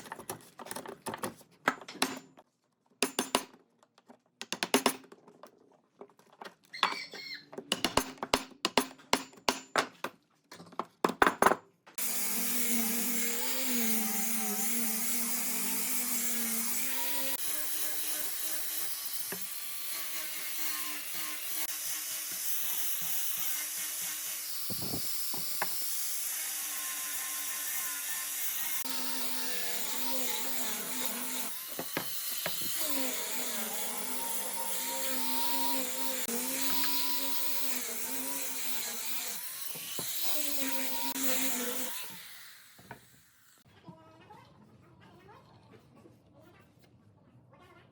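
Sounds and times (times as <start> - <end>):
electric power tool on wood: 12.0 - 43.6.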